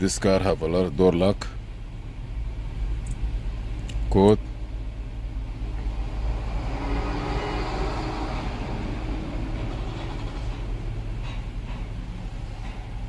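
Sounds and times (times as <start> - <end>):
vehicle passing by: 5.6 - 11.1.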